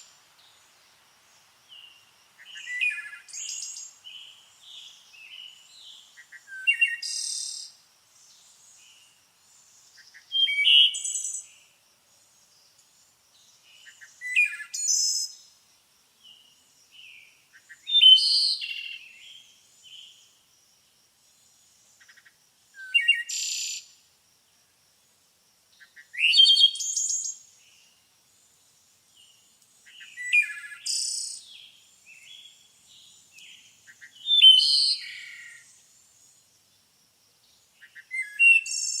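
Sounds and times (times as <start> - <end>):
faint bird chirps: 0.0 - 15.6, 29.1 - 36.4, 37.5 - 39.0.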